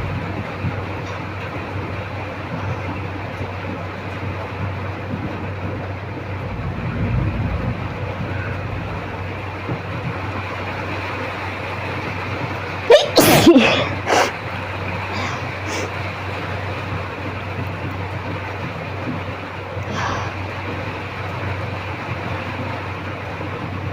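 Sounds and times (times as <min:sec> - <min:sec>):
steady low hum: 0:00.0 - 0:23.9
person sneezing: 0:12.9 - 0:14.3.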